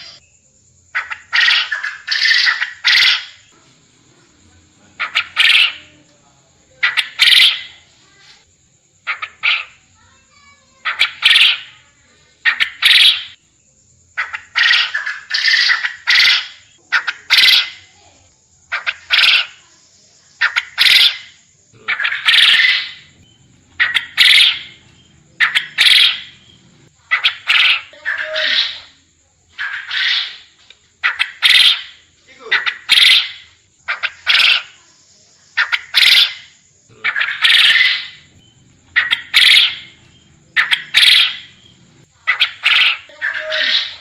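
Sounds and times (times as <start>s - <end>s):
quail calling: 0.0s - 0.2s, 1.0s - 3.6s, 5.0s - 6.0s, 6.8s - 7.8s, 9.1s - 9.9s, 10.7s - 11.8s, 12.4s - 13.4s, 14.2s - 17.9s, 18.7s - 19.6s, 20.4s - 34.8s, 35.6s - 44.0s
faint high whine: 22.9s - 26.9s, 37.7s - 42.1s.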